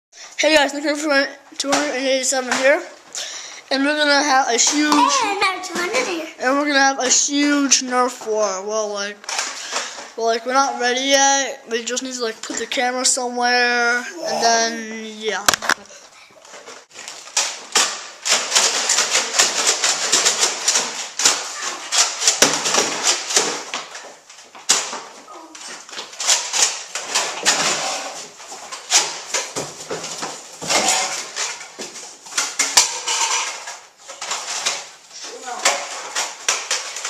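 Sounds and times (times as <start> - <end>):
rustling and handling noise: 0.4 - 37.0.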